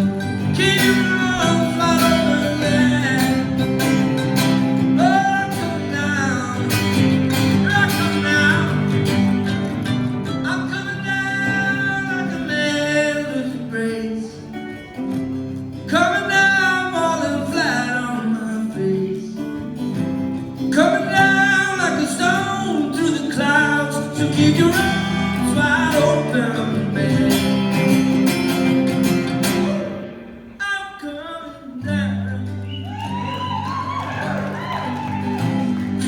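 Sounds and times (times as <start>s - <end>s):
person singing: 0.0s - 9.3s
live rock band playing: 0.0s - 13.0s, 18.2s - 30.6s.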